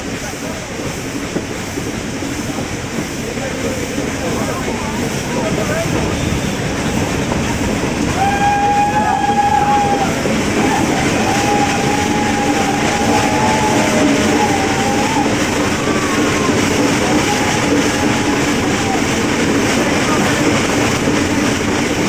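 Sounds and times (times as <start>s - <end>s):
train rumbling: 0.0s - 22.0s
wheels squealing: 1.8s - 22.0s.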